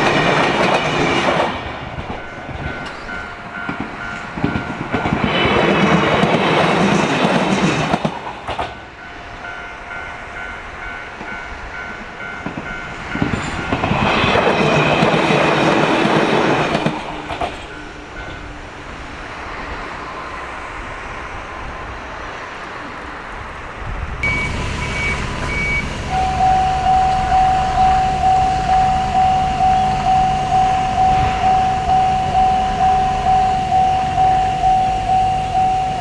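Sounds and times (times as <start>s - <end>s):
train wheels rumbling and clattering: 0.0s - 36.0s
level-crossing warning bell: 2.1s - 5.6s, 8.8s - 14.3s, 24.2s - 36.0s.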